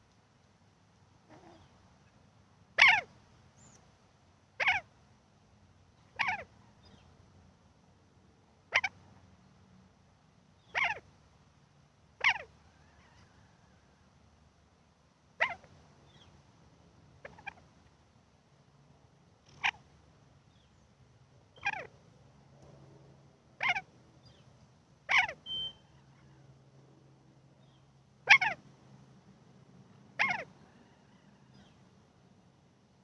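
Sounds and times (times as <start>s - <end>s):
pet animal crying: 1.3s - 1.7s, 2.8s - 3.1s, 4.6s - 4.8s, 6.2s - 6.5s, 10.8s - 11.0s, 12.2s - 13.2s, 15.4s - 15.7s, 21.6s - 21.9s, 23.6s - 23.9s, 25.1s - 25.6s, 28.3s - 28.6s, 30.2s - 31.0s.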